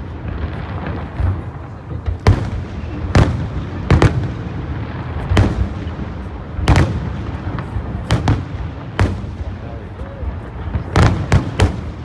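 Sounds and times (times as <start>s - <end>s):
firework shells exploding: 0.0s - 9.8s, 10.5s - 12.0s
continuous rumble: 0.0s - 12.0s.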